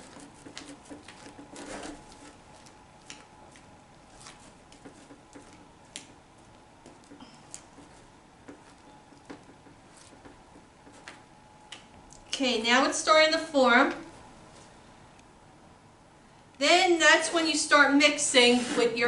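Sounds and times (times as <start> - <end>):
scraping rustle: 0.0 - 2.7
spoon stirring slime: 0.0 - 11.3.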